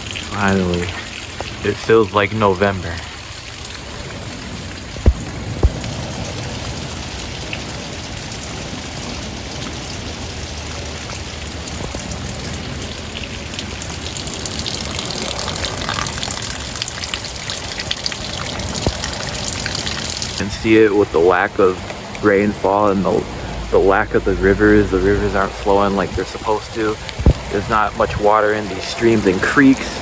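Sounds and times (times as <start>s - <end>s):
rain falling: 0.0s - 30.0s
dull thumps: 27.2s - 27.5s.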